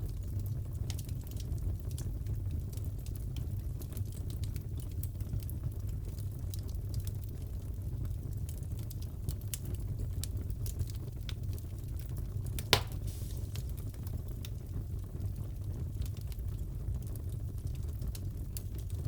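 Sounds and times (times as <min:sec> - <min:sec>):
low fire rumble: 0:00.0 - 0:19.0
wood fire crackling: 0:00.0 - 0:19.0.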